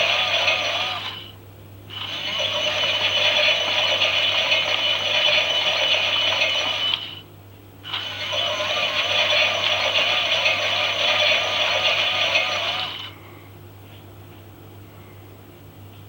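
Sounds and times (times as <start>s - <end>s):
toy washing machine motor whirring: 0.0s - 1.3s, 1.9s - 7.2s, 7.8s - 13.2s.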